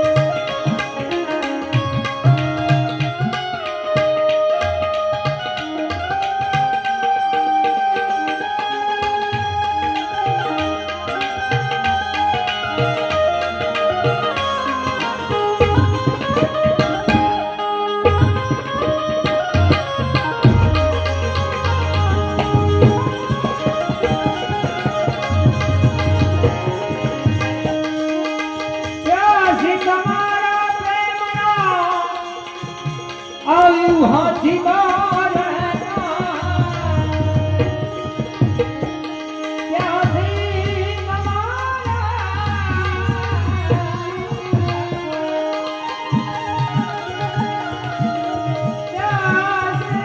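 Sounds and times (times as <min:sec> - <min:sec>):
jingling hand cymbals: 0:00.0 - 0:17.4, 0:18.1 - 0:50.0
devotional folk music: 0:00.0 - 0:50.0
percussion beat: 0:00.0 - 0:50.0
gliding melodic phrases: 0:00.1 - 0:30.6.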